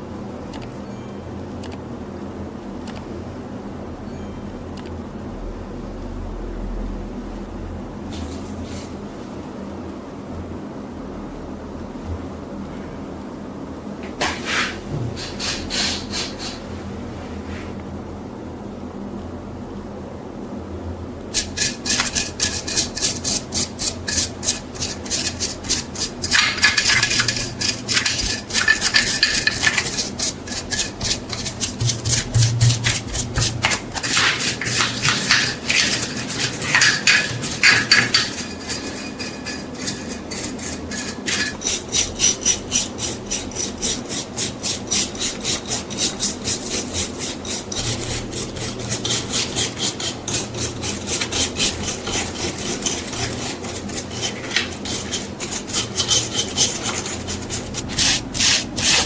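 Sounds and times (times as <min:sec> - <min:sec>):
filing metal rasping strokes: 0:15.2 - 0:16.6, 0:21.4 - 0:59.0.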